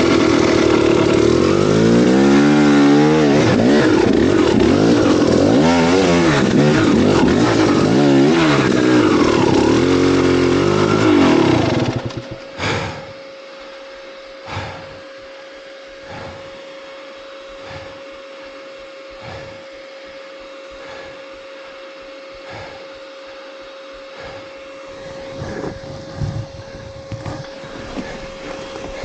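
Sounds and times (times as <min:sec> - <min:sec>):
steady high hum: 0:00.0 - 0:29.0
person breathing hard: 0:12.3 - 0:13.2, 0:14.4 - 0:15.1, 0:16.0 - 0:16.6, 0:17.5 - 0:19.7, 0:20.7 - 0:21.6, 0:22.3 - 0:29.0.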